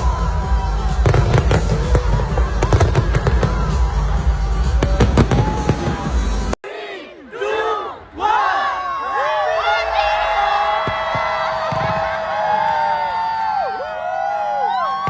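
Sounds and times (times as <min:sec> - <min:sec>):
fireworks bangs and crackles: 0:00.0 - 0:06.6, 0:10.7 - 0:13.0
music playing: 0:00.0 - 0:06.6.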